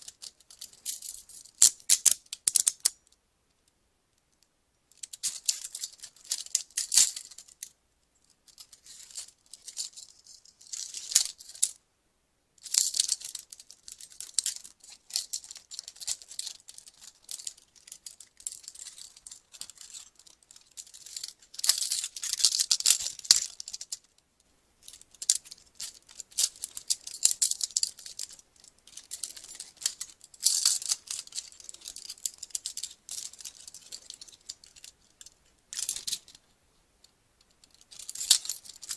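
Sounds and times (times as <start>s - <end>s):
handcuff chain jangling: 24.9s - 34.9s, 38.0s - 38.9s.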